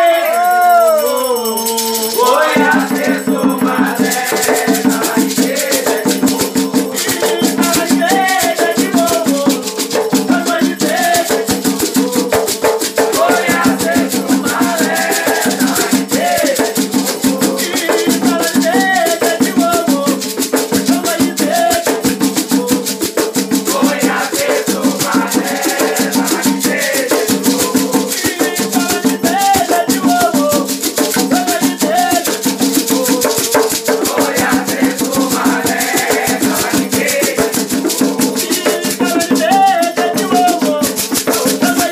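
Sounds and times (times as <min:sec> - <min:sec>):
shakers and percussion rattling: 0:00.0 - 0:41.9
voices chanting: 0:01.0 - 0:09.6, 0:13.1 - 0:20.0, 0:23.7 - 0:30.6, 0:32.8 - 0:37.9.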